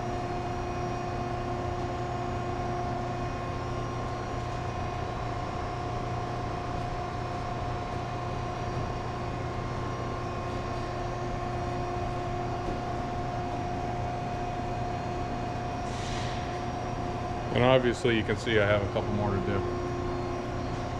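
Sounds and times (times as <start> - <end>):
machinery hum: 0.0 - 20.9.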